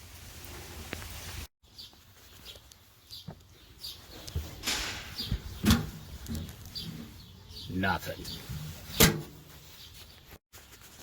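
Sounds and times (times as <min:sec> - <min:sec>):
small bird chirping: 0:01.6 - 0:09.0.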